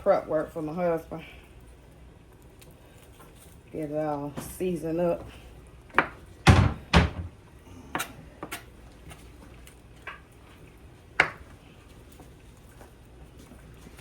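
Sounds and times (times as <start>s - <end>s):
kitchen handling clicks and knocks: 6.0s - 7.4s.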